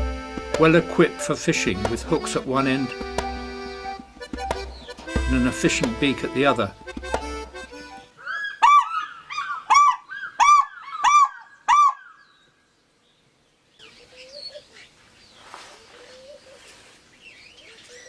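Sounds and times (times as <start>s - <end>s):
small birds chirping: 0.0s - 18.0s
eagle calling with ringing yelps: 0.8s - 5.6s, 6.3s - 12.4s.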